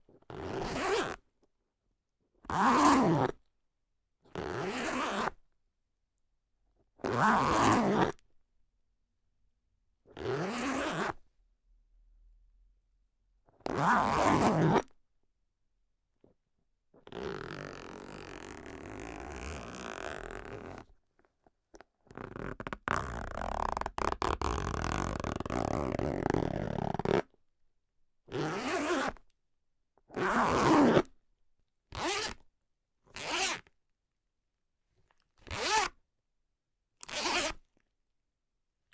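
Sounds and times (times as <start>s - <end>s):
jacket zipper pulled: 7.1s - 8.1s, 10.2s - 11.2s, 13.7s - 14.9s, 17.0s - 20.9s, 22.1s - 27.2s, 28.3s - 29.2s, 30.2s - 31.1s, 32.0s - 32.4s, 33.2s - 33.6s, 35.4s - 35.9s, 37.0s - 37.6s.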